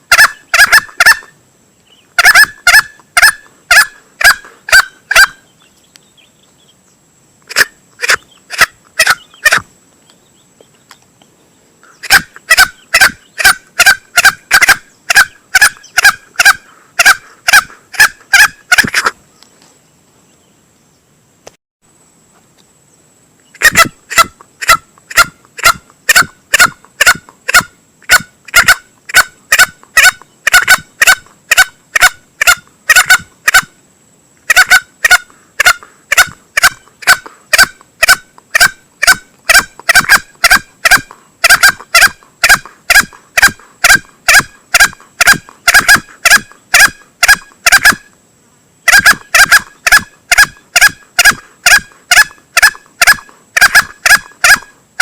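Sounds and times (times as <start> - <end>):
junglefowl calls: 0.0 - 1.4, 2.1 - 5.6, 7.5 - 9.7, 11.8 - 19.2, 23.5 - 33.8, 34.5 - 48.1, 48.8 - 54.8.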